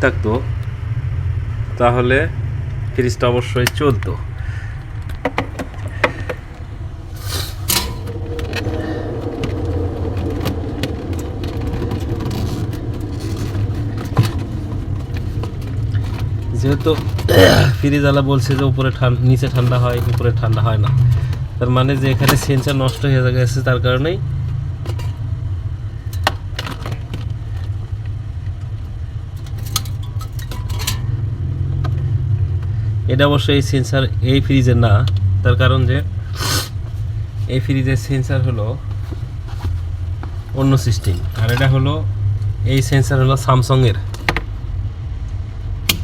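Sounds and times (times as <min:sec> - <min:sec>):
low engine-like rumble: 0:00.0 - 0:46.0.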